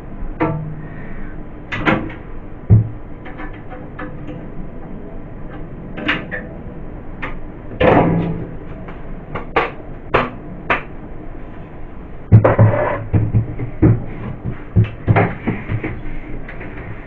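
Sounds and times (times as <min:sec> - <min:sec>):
fridge shelves knocking and clattering: 0:01.7 - 0:04.2, 0:12.3 - 0:17.0.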